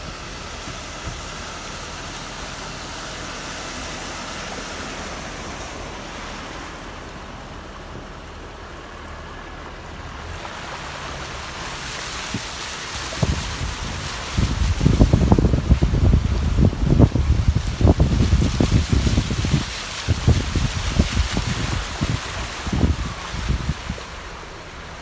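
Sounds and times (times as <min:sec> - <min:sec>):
wind thumping on microphone: 0:00.0 - 0:06.4, 0:11.8 - 0:24.6
floodwater rushing: 0:00.0 - 0:25.0.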